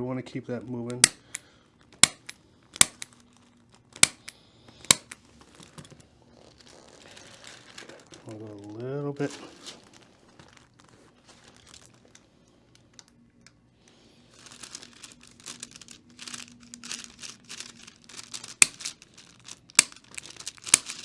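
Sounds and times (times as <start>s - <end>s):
adjusting instrument clicks: 0.9s - 1.4s, 2.0s - 3.1s, 4.0s - 4.3s, 4.9s - 5.2s
paper cover crinkling: 0.9s - 13.2s, 13.9s - 21.0s.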